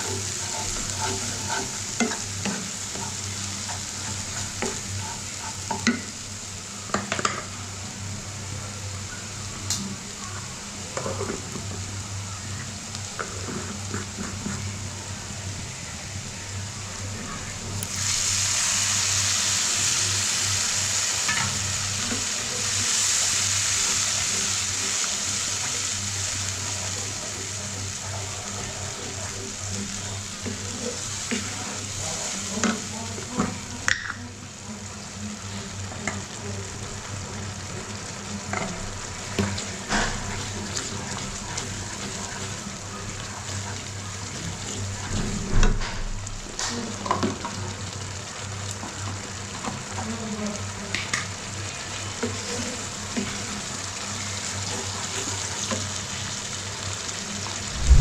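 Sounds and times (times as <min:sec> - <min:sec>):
spatula scraping pan: 0:00.0 - 0:05.9
spices sizzling in hot oil: 0:00.0 - 0:58.0.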